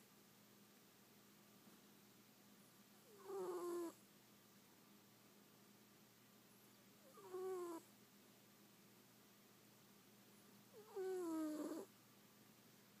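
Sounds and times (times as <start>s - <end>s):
cat snoring: 3.1s - 4.0s, 7.0s - 7.8s, 10.7s - 11.9s.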